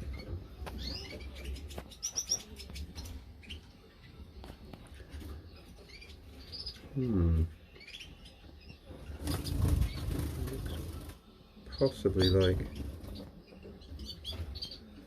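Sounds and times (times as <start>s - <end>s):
finches chirping: 0.0s - 15.0s.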